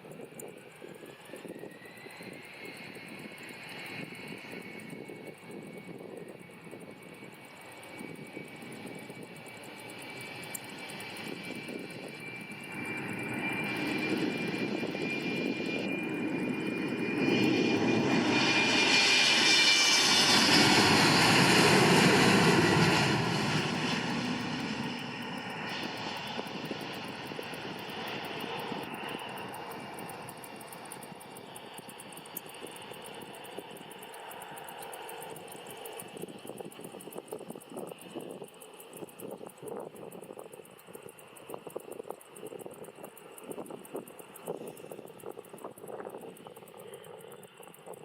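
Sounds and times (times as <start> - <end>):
jet airliner passing by: 0.0 - 48.0
high engine whine: 8.1 - 37.1.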